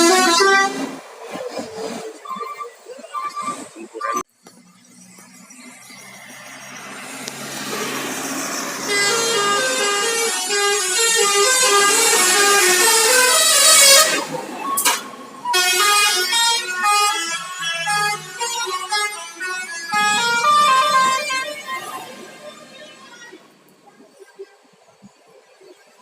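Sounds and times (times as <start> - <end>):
bus horn playing a tune: 0.0 - 1.0, 8.7 - 23.1.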